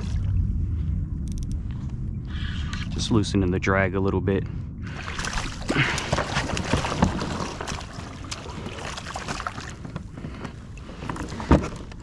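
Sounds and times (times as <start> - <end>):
water splashing: 4.8 - 12.0.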